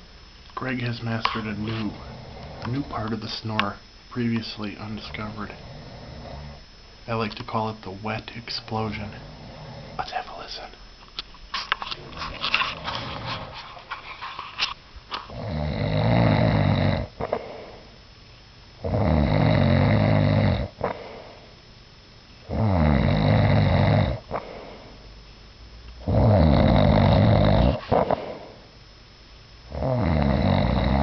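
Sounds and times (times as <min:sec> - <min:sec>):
loud snoring with wet pop: 0:01.4 - 0:03.6, 0:04.9 - 0:06.7, 0:12.7 - 0:13.6, 0:15.3 - 0:17.9, 0:18.8 - 0:21.4, 0:22.4 - 0:24.9, 0:26.0 - 0:28.6, 0:29.7 - 0:31.0.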